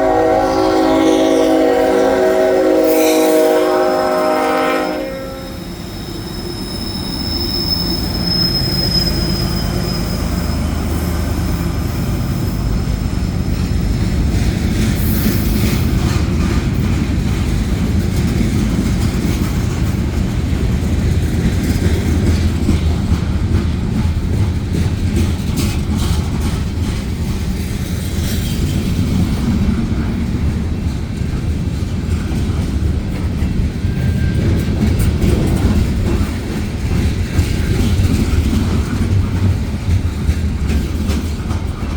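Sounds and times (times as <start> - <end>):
freight train wheels rumbling: 0.0 - 41.9
high wheel squeal: 5.0 - 14.1.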